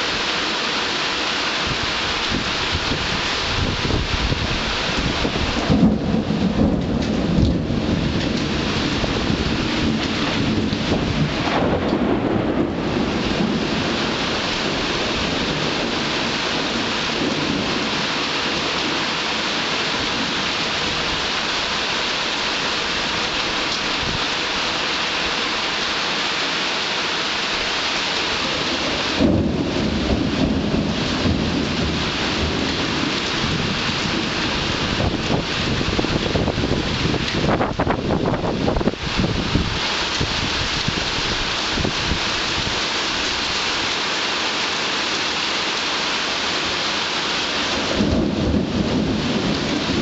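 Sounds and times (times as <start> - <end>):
heavy rain hissing: 0.0 - 50.0
thunder rumbling: 1.7 - 21.4, 28.3 - 42.8, 47.6 - 50.0
loud thunderclap: 2.3 - 18.9, 28.4 - 41.0, 47.7 - 50.0.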